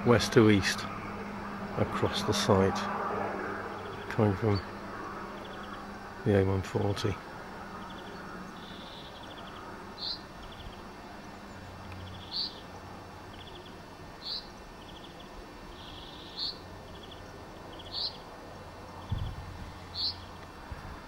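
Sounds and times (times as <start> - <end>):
low background rumble: 0.0 - 21.0
faint bird trills: 3.3 - 6.2, 7.4 - 21.0
small bird chirping: 7.8 - 21.0.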